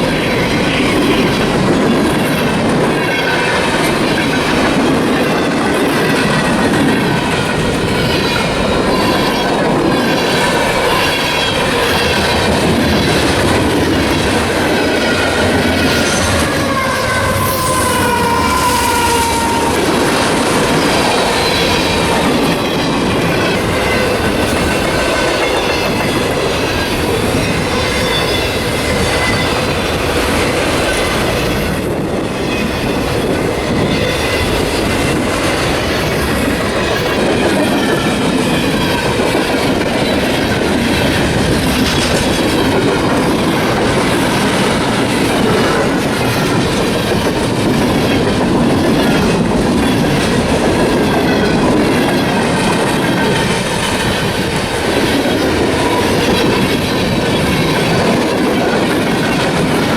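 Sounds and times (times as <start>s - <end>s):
train wheels rolling on rail: 0.0s - 59.9s
high wheel squeal: 8.0s - 24.8s.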